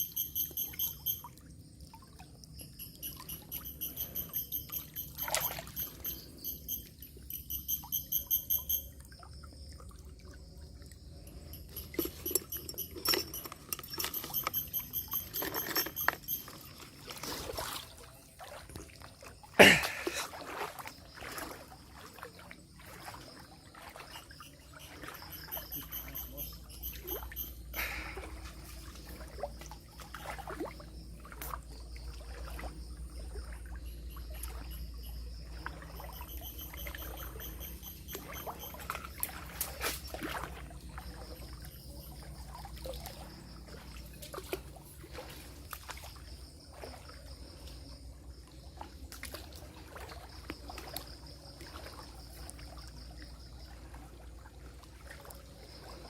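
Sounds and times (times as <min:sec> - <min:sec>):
high pulsed chirping call: 0:00.0 - 0:01.5, 0:02.5 - 0:09.2, 0:11.2 - 0:16.8, 0:24.0 - 0:28.3, 0:33.7 - 0:40.2
river water splashing and trickling: 0:00.0 - 0:56.0.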